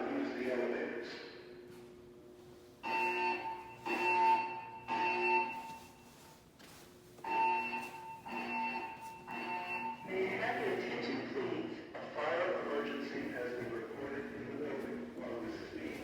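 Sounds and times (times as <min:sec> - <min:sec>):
fire alarm evacuation beeps: 0:02.7 - 0:06.4, 0:07.1 - 0:11.8.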